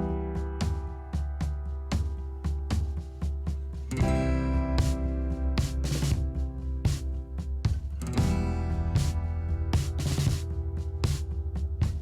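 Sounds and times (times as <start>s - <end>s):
music with strummed guitar: 3.0s - 12.0s.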